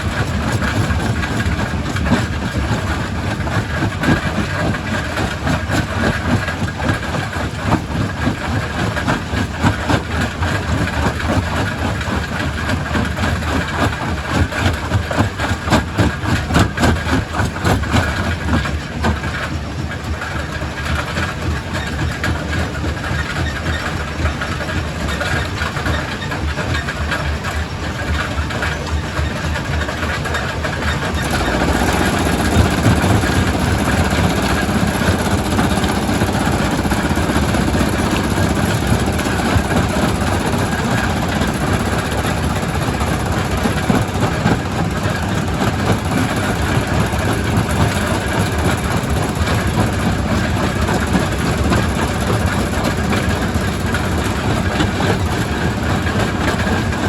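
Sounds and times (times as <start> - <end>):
rock crusher rumbling: 29.5 - 57.0.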